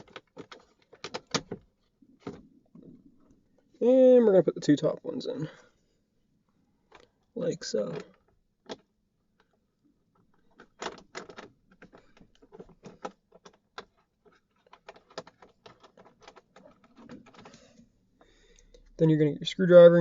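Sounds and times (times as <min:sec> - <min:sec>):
clicks of screws and plastic trim: 0:00.0 - 0:02.5, 0:07.9 - 0:09.6, 0:10.2 - 0:17.8.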